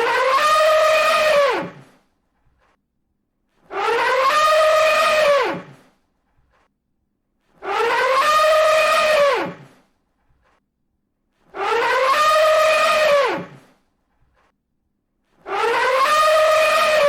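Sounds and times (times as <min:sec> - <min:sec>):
elephant trumpeting: 0:00.0 - 0:01.9, 0:03.6 - 0:05.9, 0:07.6 - 0:09.8, 0:11.5 - 0:13.7, 0:15.4 - 0:17.0.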